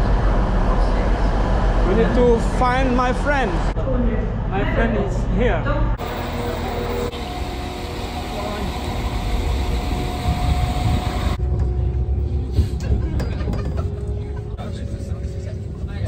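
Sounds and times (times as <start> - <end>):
train rumbling: 5.9 - 16.0
faint steady whine: 6.0 - 11.5.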